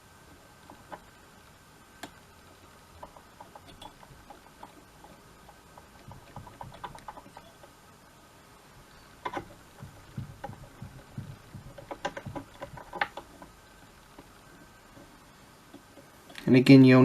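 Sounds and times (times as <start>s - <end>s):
small clicks and ticks of hands: 9.2s - 13.5s.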